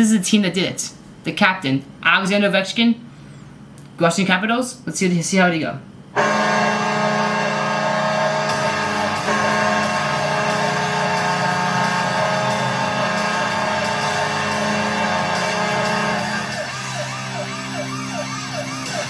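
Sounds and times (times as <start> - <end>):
arena goal horn: 6.2 - 16.8
siren wailing: 6.2 - 19.0.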